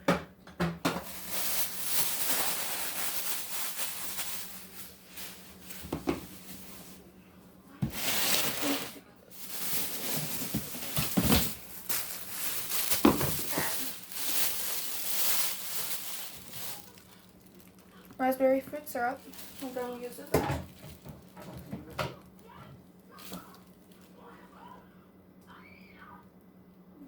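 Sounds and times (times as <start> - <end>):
plastic bags rustling: 0.8 - 7.2, 7.8 - 24.5
containers knocking when set down: 10.1 - 11.7, 12.9 - 13.7.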